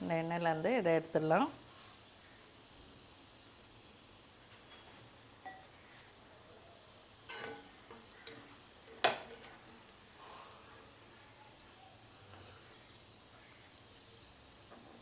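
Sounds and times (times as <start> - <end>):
frying oil sizzling: 0.0 - 15.0
utensil clinking on pan: 5.4 - 5.7, 7.3 - 9.6.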